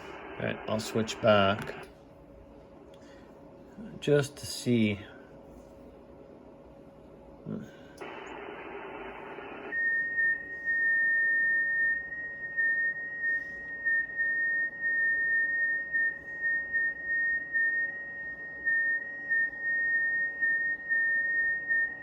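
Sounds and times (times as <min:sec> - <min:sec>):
steady radio tone: 0:00.0 - 0:01.8, 0:08.0 - 0:22.0
receiver hiss: 0:00.0 - 0:02.0, 0:07.7 - 0:22.0.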